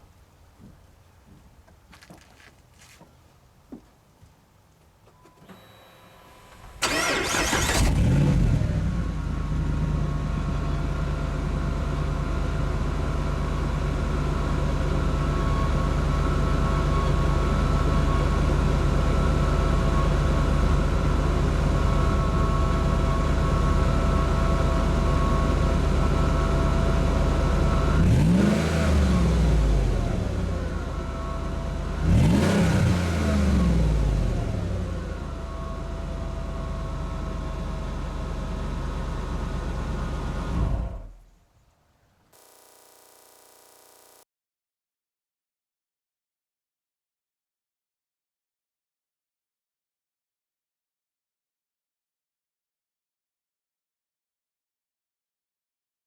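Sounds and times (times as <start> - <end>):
engine starting and idling: 5.4 - 9.2
engine revving: 6.8 - 9.2, 28.0 - 30.4, 32.0 - 34.7.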